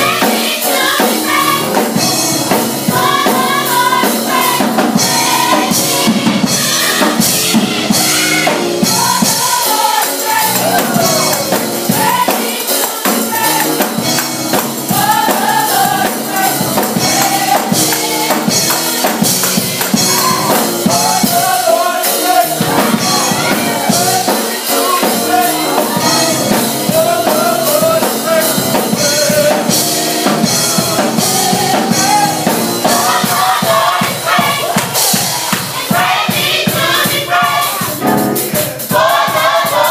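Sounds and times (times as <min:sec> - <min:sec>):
drums beating: 0:00.0 - 0:39.9
gospel choir singing: 0:00.0 - 0:39.9
tambourine: 0:06.6 - 0:39.9.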